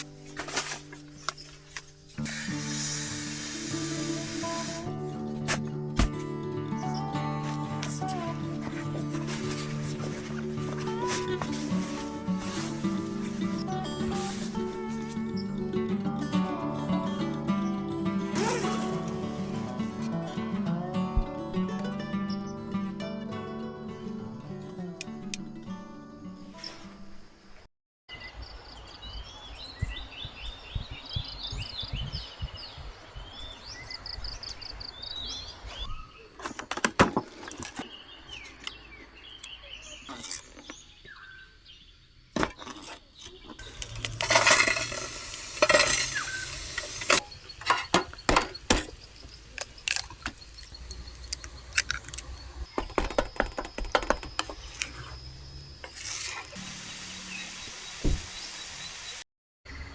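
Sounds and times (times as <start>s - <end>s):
dishes and utensils clattering: 43.6s - 49.0s.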